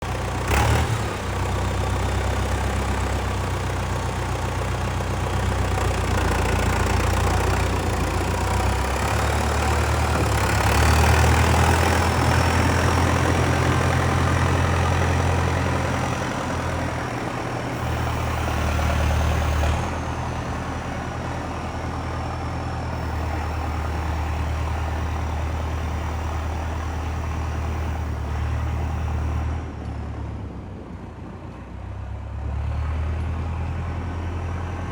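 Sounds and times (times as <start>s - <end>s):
diesel engine running: 0.0s - 34.9s.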